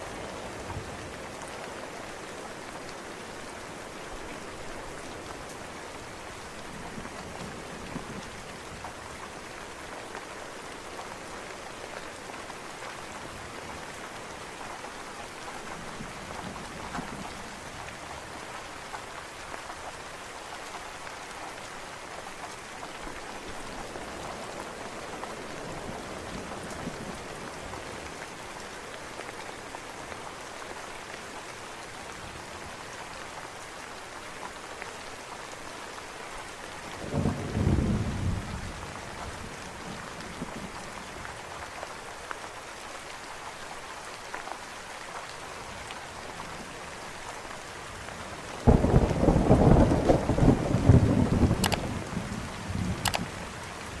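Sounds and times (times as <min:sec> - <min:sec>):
steady rain hiss: 0:00.0 - 0:54.0
raindrops ticking: 0:48.7 - 0:52.1, 0:52.8 - 0:53.9.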